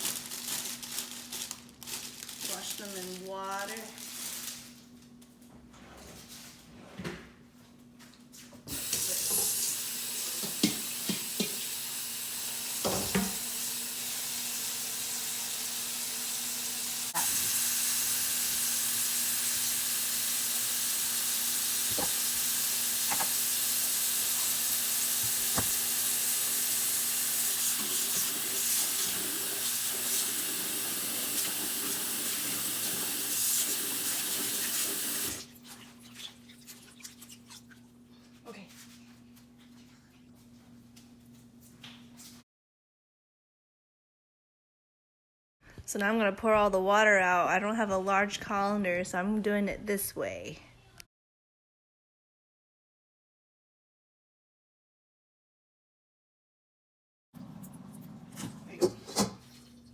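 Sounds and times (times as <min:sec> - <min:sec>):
kitchen tap running into container: 0:08.7 - 0:35.5.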